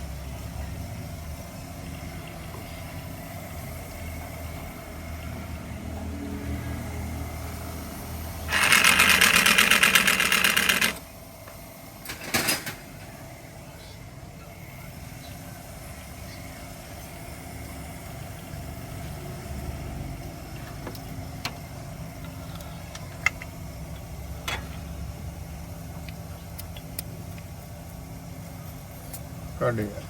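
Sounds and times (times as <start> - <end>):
rapid mechanical rattle: 8.5 - 11.1.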